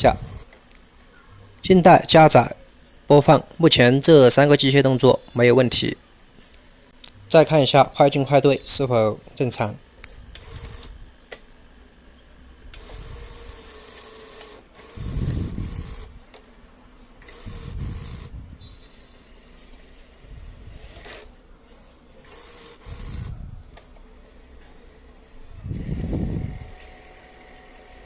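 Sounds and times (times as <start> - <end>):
tape reel drive whining: 10.0 - 11.6, 12.2 - 16.2, 17.2 - 21.4, 22.2 - 28.0.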